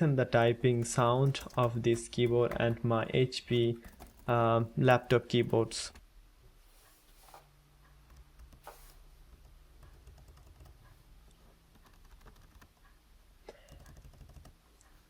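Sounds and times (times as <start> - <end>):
fast typing on keyboard: 0.7 - 2.8, 3.5 - 4.5, 9.4 - 10.8, 11.7 - 12.8, 13.6 - 14.6.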